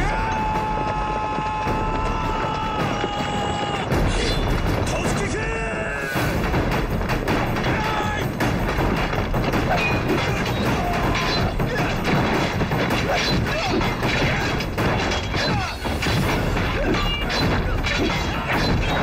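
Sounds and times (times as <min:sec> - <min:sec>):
dramatic music: 0:00.0 - 0:19.0
crashes booms and thuds: 0:06.2 - 0:19.0.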